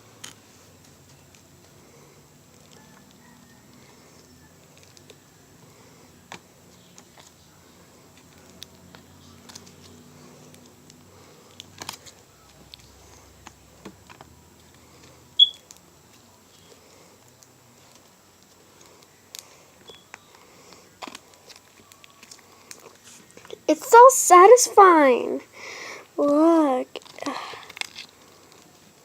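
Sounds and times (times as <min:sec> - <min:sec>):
faint clicks and crackles: 0:05.8 - 0:23.6, 0:26.9 - 0:29.0
short high beep: 0:15.4 - 0:15.6.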